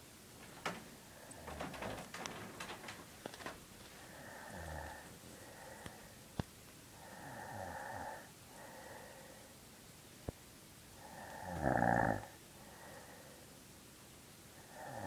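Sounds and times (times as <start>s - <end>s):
woman snoring: 11.0s - 12.3s.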